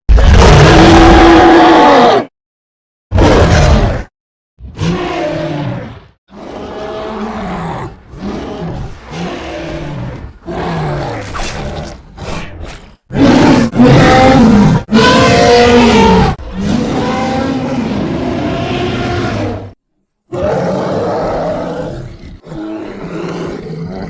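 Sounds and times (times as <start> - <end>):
loud long roars: 0.1 - 2.3, 13.1 - 24.0
bear growls and grunts: 3.1 - 24.0.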